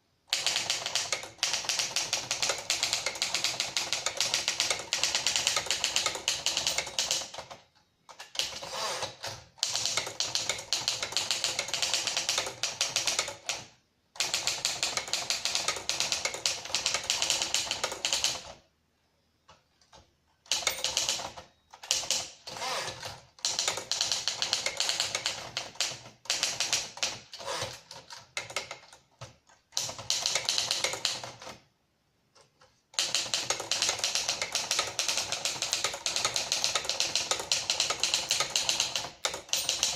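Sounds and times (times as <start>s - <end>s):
manual typewriter key strikes: 0.4s - 7.5s, 20.5s - 31.6s, 33.0s - 39.9s.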